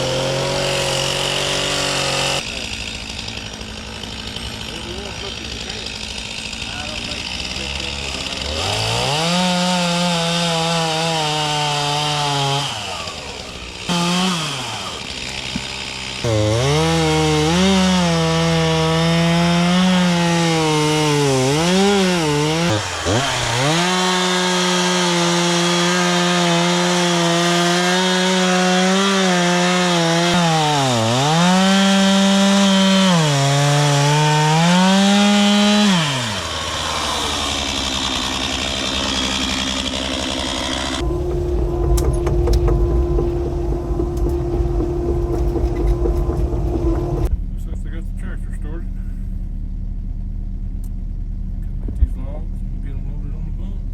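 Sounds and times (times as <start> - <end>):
chainsaw cutting wood: 0.0 - 47.3.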